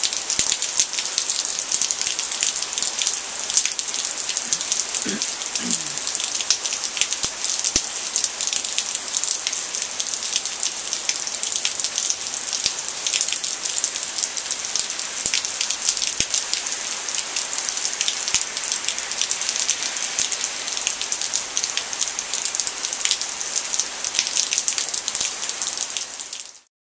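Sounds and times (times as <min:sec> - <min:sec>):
raindrops ticking on hard surfaces: 0:00.0 - 0:26.7
heavy rain hissing: 0:00.9 - 0:11.6.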